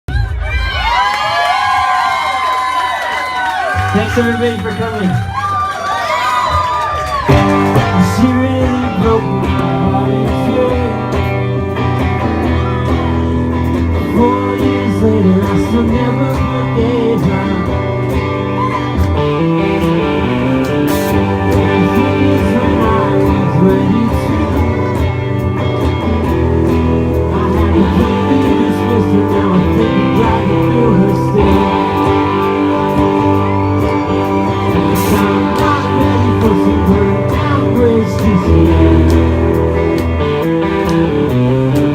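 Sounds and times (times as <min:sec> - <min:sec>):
live rock band playing: 0:05.9 - 0:41.9
person singing: 0:07.3 - 0:13.2, 0:13.8 - 0:40.4.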